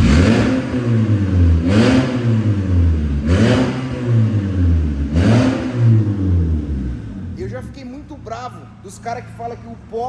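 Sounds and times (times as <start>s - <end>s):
car engine revving with growl: 0.0s - 7.6s.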